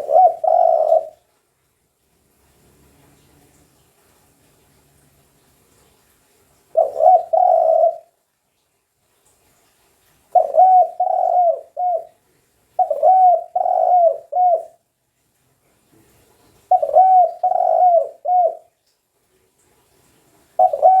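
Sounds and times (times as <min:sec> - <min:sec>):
dove cooing: 0:00.0 - 0:01.2, 0:06.7 - 0:08.1, 0:10.3 - 0:12.2, 0:12.8 - 0:14.8, 0:16.7 - 0:18.7, 0:20.6 - 0:21.0.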